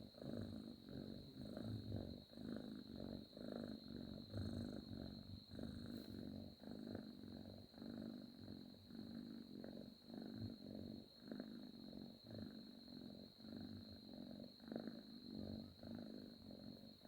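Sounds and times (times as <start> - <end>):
cat purring: 0.0 - 17.0.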